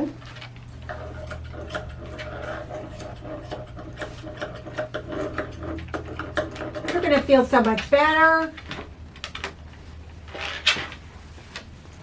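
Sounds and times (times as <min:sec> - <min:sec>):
electric clippers buzzing: 0:00.9 - 0:07.0.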